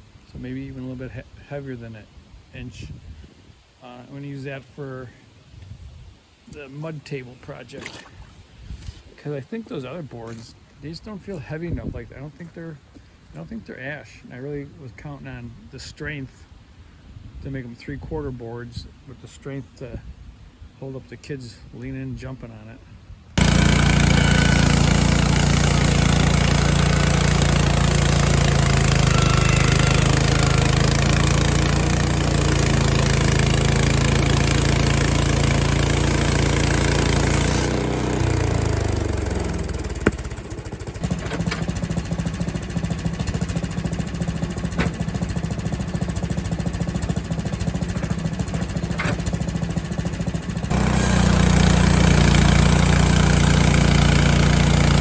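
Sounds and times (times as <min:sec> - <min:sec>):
sawmill engine running: 0:23.4 - 0:55.0
engine clicks: 0:39.4 - 0:51.0.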